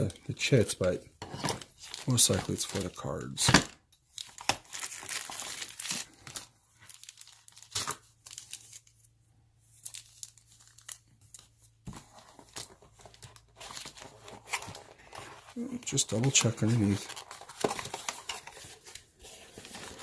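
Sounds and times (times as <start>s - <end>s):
packaging crinkling: 4.1s - 9.0s.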